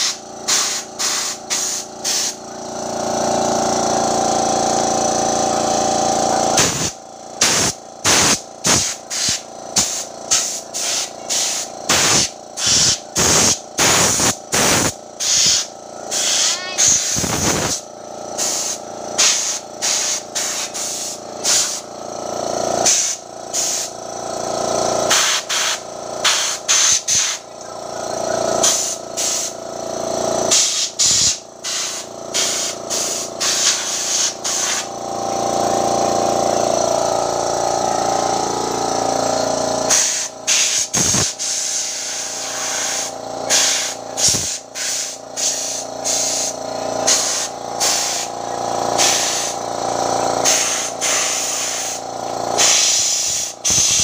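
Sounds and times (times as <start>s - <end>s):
pressure washer spraying: 0.0s - 4.0s, 6.3s - 17.8s, 18.4s - 21.9s, 22.8s - 23.9s, 25.1s - 27.4s, 28.6s - 29.6s, 30.5s - 35.0s, 39.9s - 49.7s, 50.4s - 54.0s.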